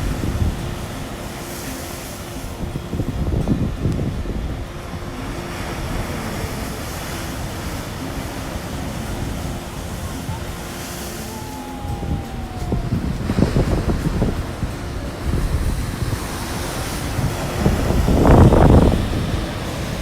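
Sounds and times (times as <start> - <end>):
ocean surf on a beach: 0.0 - 20.0
wind buffeting microphone: 0.0 - 20.0
thin falling whistle: 10.0 - 14.3.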